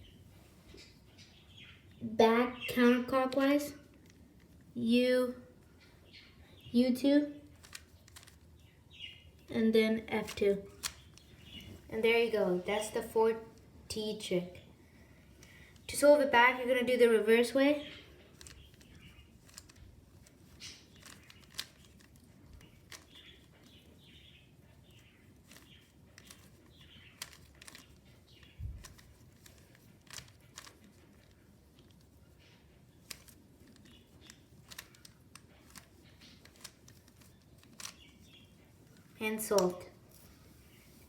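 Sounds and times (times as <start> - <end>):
puzzle cube clicking: 7.5 - 8.6, 10.2 - 11.6, 18.4 - 23.8, 25.4 - 32.1, 33.0 - 39.8.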